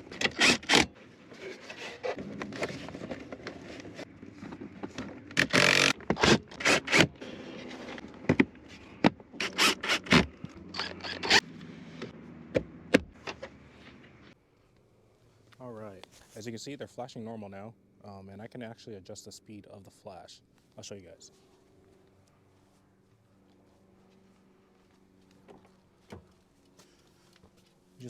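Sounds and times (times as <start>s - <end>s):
scraping and rubbing on car parts: 1.2s - 5.3s.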